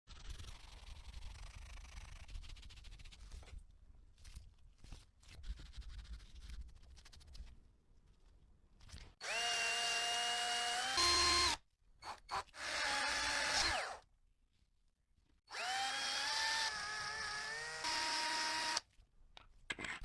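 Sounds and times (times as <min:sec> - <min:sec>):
electric power tool whining: 0:15.5 - 0:18.8.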